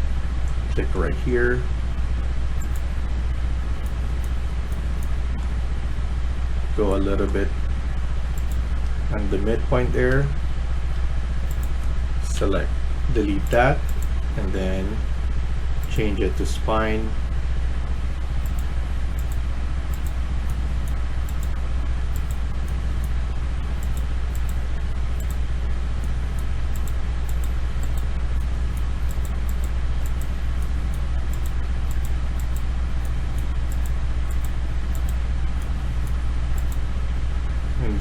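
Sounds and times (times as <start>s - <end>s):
fan or air conditioner hum: 0.0s - 38.0s
computer mouse clicks: 2.6s - 3.0s, 3.6s - 5.5s, 8.3s - 8.7s, 11.4s - 11.9s, 13.4s - 14.2s, 15.8s - 16.1s, 18.0s - 36.9s.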